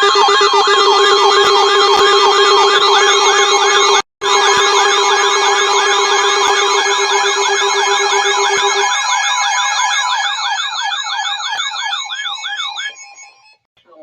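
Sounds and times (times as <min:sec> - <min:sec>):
electronic alert alarms sweeping: 0:00.0 - 0:13.6
steady low alarm tone: 0:00.0 - 0:13.7.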